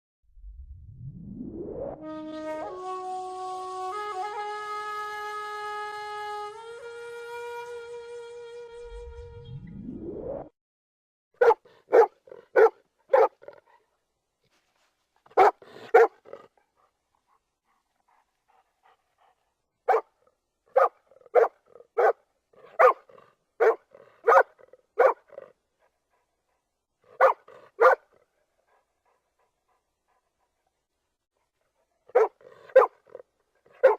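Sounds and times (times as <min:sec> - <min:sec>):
dog barking: 0:11.4 - 0:13.9, 0:15.3 - 0:16.5, 0:19.9 - 0:25.5, 0:27.1 - 0:28.2, 0:32.0 - 0:33.9.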